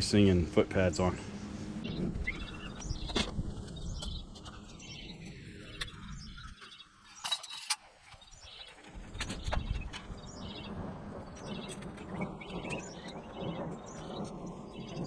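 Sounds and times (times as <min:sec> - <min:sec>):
low rumble: 0:00.0 - 0:06.5
small birds chirping: 0:00.0 - 0:15.0.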